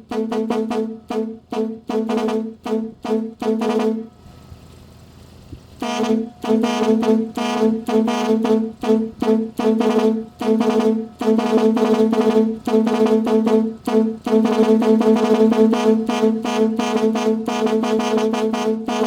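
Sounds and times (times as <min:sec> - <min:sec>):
truck air horn blasts: 0:00.0 - 0:04.3, 0:05.8 - 0:19.0.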